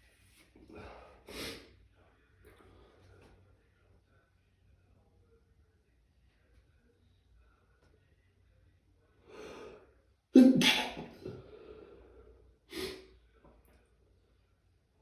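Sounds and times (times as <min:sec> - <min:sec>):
person sneezing: 0:10.4 - 0:11.4.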